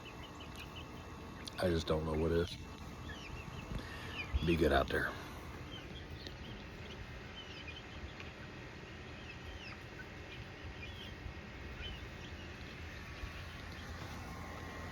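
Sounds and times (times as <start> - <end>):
bird chirps: 3.0 - 8.2, 8.8 - 14.9.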